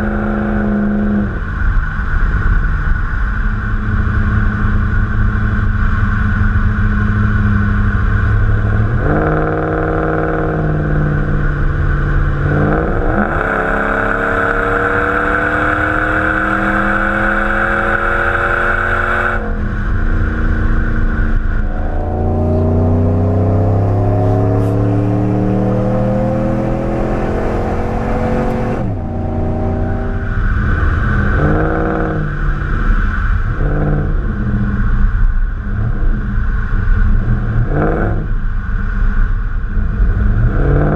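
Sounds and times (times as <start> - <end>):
vee eight engine revving: 6.6 - 36.3.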